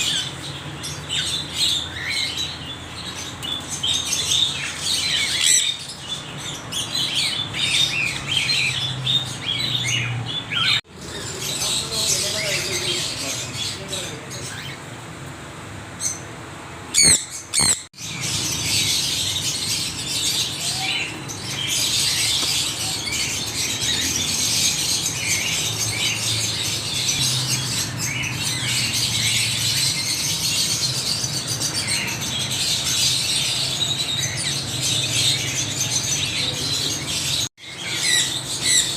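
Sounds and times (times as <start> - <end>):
parrots chattering and squawking: 0.0 - 15.0, 15.9 - 38.9
loud sharp parrot calls: 16.9 - 30.5.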